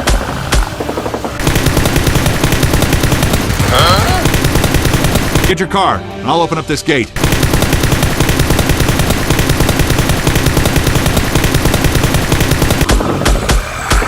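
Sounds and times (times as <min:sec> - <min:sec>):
automatic gunfire: 0:01.4 - 0:05.6, 0:07.2 - 0:13.5
heavy shots with low thumps: 0:07.2 - 0:14.0.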